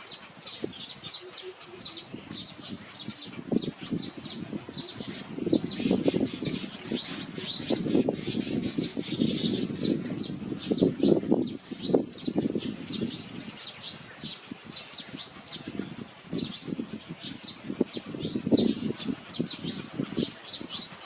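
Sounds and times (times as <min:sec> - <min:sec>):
birds chirping: 0:00.0 - 0:21.0
wings fluttering and rustling: 0:02.5 - 0:11.3.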